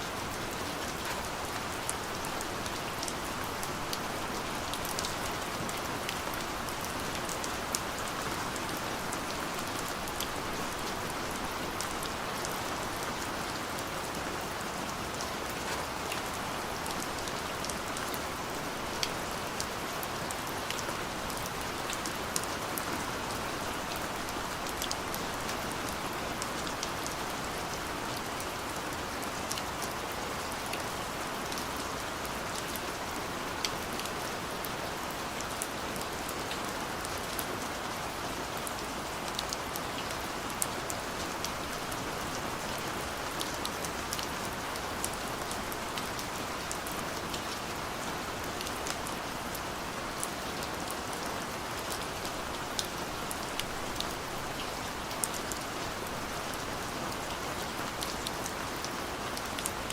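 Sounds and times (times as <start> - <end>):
light rain hiss: 0.0 - 59.9
raindrops ticking on a surface: 14.8 - 59.9.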